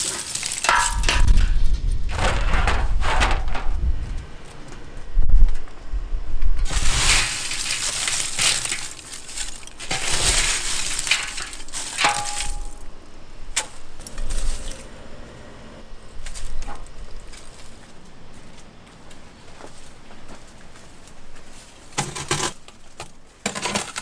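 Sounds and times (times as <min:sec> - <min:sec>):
hard pieces clattering: 0:00.0 - 0:03.7, 0:06.6 - 0:12.9.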